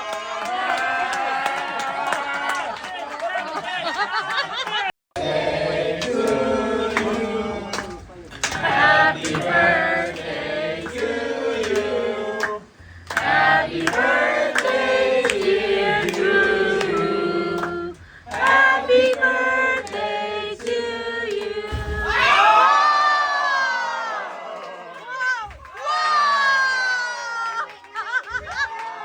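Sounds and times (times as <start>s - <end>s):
group of people singing: 5.2s - 22.6s
hand claps: 6.0s - 20.0s, 27.6s - 29.0s.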